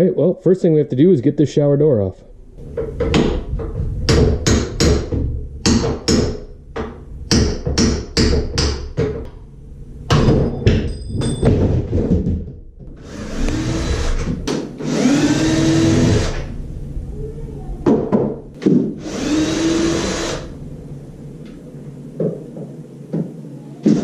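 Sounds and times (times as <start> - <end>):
tools knocking and tapping: 2.7 - 9.4, 10.1 - 12.9
metallic rings: 10.4 - 11.6
power tool motor whirring: 13.0 - 16.5, 19.0 - 20.5.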